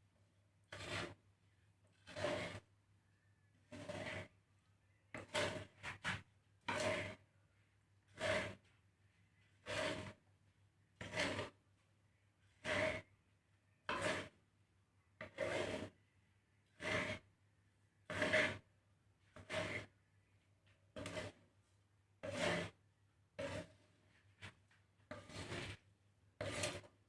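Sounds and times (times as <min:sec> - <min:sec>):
spatula stirring grains in pan: 0:00.7 - 0:01.2, 0:01.9 - 0:02.7, 0:03.6 - 0:07.3, 0:08.1 - 0:10.3, 0:11.0 - 0:11.6, 0:12.4 - 0:13.2, 0:13.8 - 0:14.4, 0:15.2 - 0:16.0, 0:16.6 - 0:17.3, 0:18.0 - 0:20.0, 0:20.9 - 0:21.5, 0:22.2 - 0:27.0.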